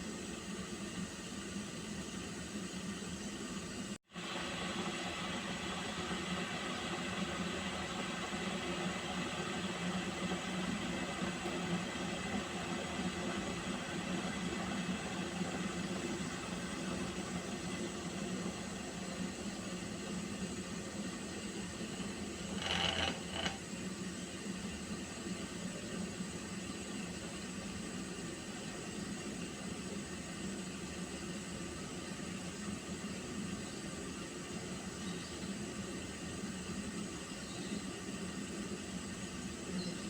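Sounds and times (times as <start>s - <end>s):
water heating with hiss: 0.0s - 40.0s.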